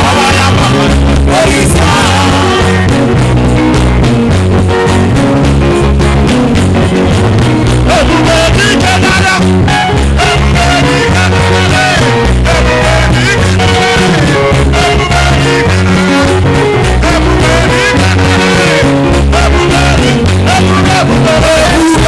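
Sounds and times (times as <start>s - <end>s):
person singing: 0.0s - 3.2s, 7.8s - 22.0s
upbeat band music: 0.0s - 22.0s.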